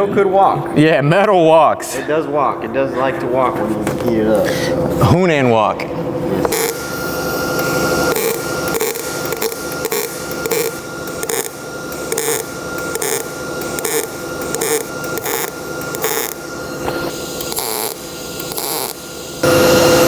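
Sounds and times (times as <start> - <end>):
welding arc crackling and sizzling: 6.4 - 20.0.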